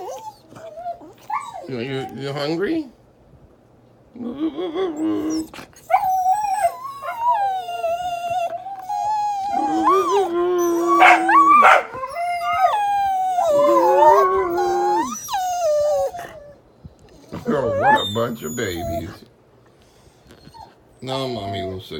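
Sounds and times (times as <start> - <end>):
dogs howling together: 4.2 - 19.2.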